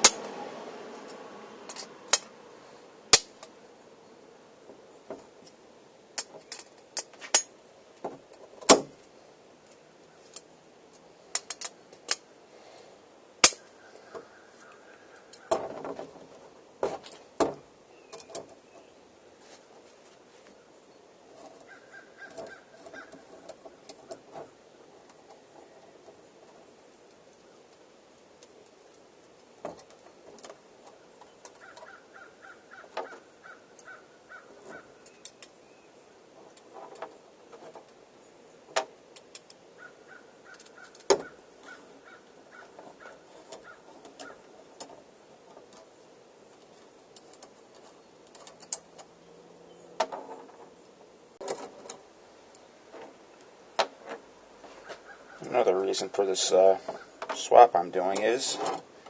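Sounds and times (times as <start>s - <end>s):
metal bike parts clinking: 0.0s - 0.3s, 11.3s - 12.3s, 13.4s - 13.7s.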